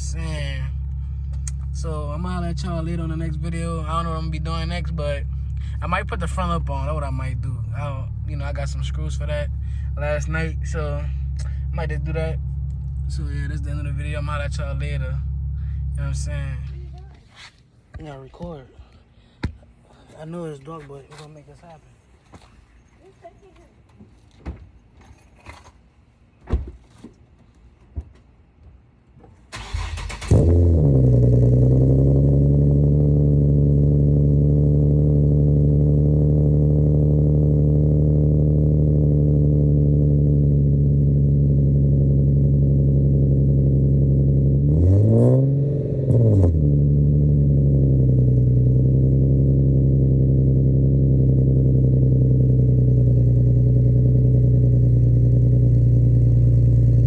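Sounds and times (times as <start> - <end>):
car engine revving: 0.0 - 17.0, 29.6 - 57.0
car engine starting and idling: 0.0 - 17.2, 29.2 - 57.0.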